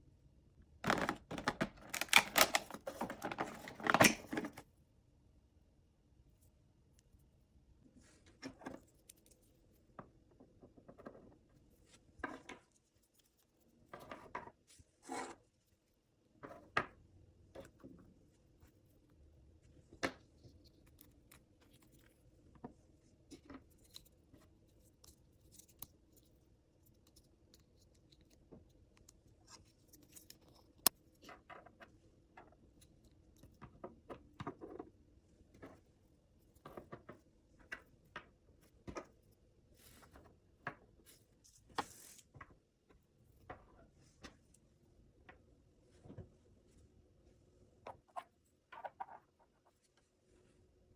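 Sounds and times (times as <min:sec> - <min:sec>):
toy packaging being opened: 0:00.9 - 0:04.6.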